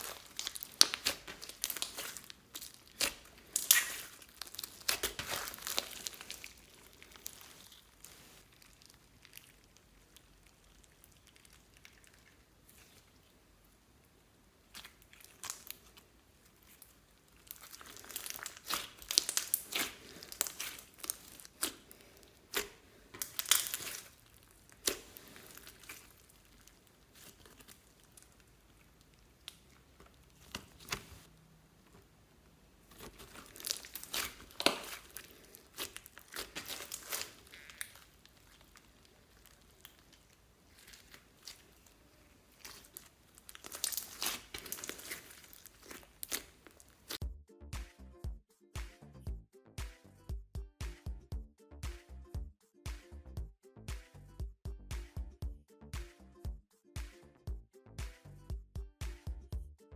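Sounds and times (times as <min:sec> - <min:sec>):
slime crackling and popping: 0:00.0 - 0:13.8, 0:14.6 - 0:31.3, 0:32.8 - 0:47.2.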